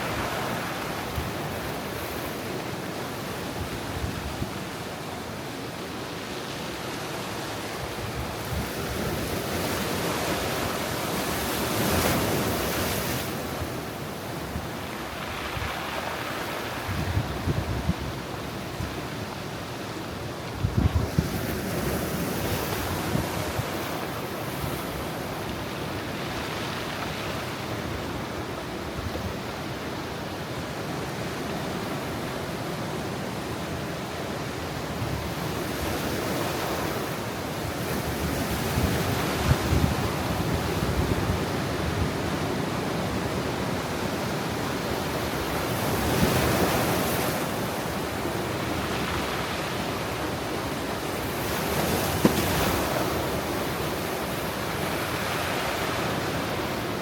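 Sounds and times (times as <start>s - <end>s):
surf breaking on rocky shore: 35.0s - 57.0s.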